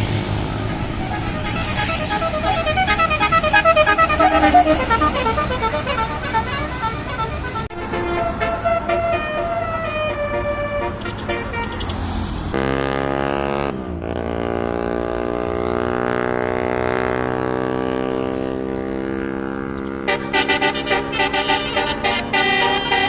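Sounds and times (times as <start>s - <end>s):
musical bus air horns: 0.4s - 13.7s, 19.8s - 23.0s
deep buzzy held horn tone: 20.0s - 23.0s.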